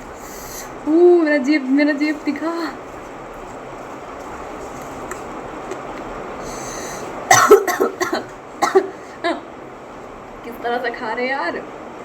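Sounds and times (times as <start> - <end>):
woman coughing harshly: 7.3 - 9.5.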